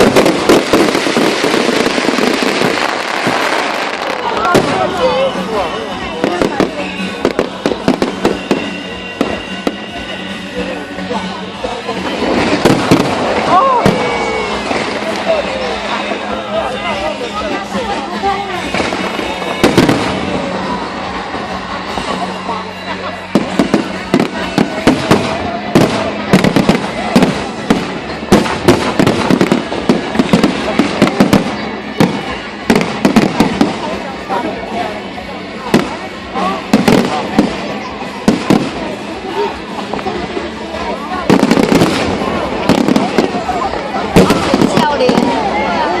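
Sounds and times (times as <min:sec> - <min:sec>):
crowd voices: 0:00.0 - 0:46.0
fireworks bangs and cracks: 0:00.0 - 0:46.0
music: 0:00.0 - 0:46.0.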